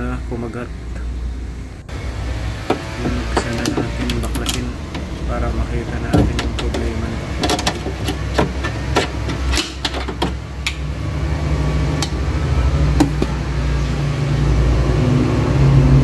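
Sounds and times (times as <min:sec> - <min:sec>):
vehicle engine humming: 0:00.0 - 0:16.0
clicks and knocks of parts handled: 0:02.7 - 0:05.3, 0:06.1 - 0:10.9.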